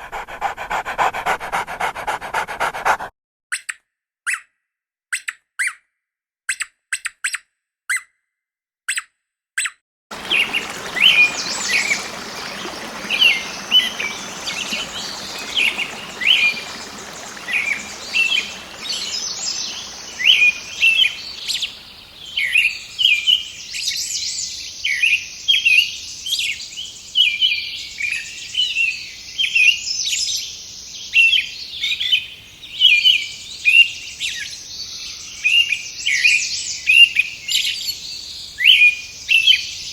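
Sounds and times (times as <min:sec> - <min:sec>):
background hiss: 0:10.1 - 0:23.7
birds chirping and trilling: 0:10.2 - 0:24.4.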